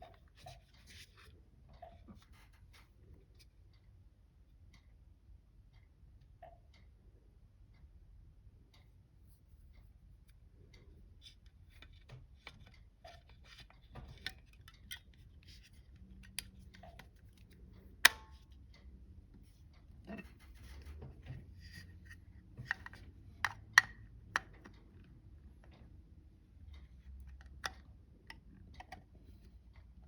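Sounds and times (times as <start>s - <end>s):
small plastic clicks and taps: 22.6s - 24.9s.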